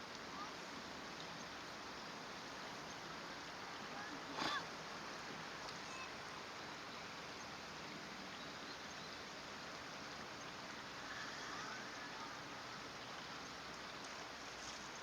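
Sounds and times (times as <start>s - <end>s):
faint bird chirps: 5.8s - 6.2s.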